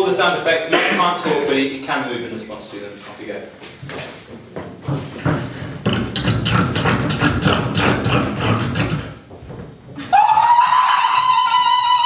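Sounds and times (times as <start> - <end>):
mouth clicks and thuds: 4.3 - 10.1
high sliding mouth note: 5.9 - 9.1.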